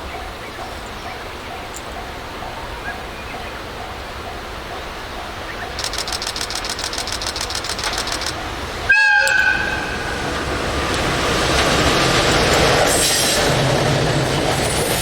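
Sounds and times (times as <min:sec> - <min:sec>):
train rumble: 0:00.0 - 0:15.0
rapid high ticking: 0:05.7 - 0:08.6
locomotive horn blast: 0:08.9 - 0:10.3.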